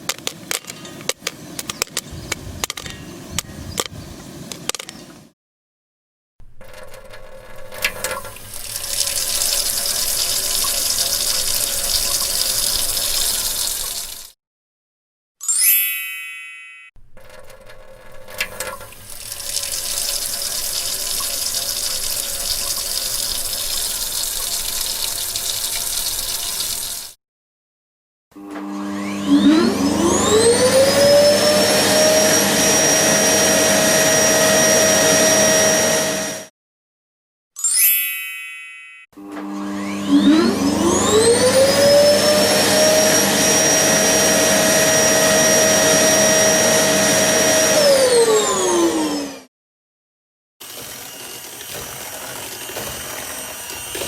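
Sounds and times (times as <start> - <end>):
vacuum cleaner running: 1.7 - 4.7, 28.4 - 36.5, 39.2 - 49.5, 50.6 - 54.0
water running from a tap: 7.7 - 14.4, 18.4 - 27.2, 50.6 - 54.0.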